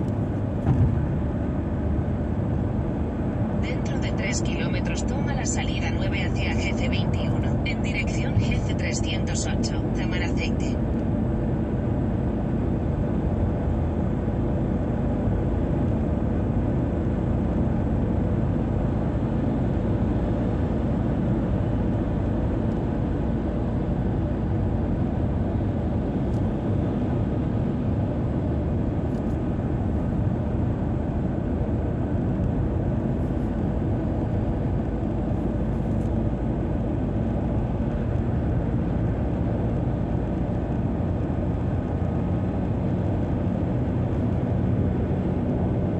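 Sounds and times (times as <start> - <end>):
tyres and engine rumbling: 0.0 - 12.6.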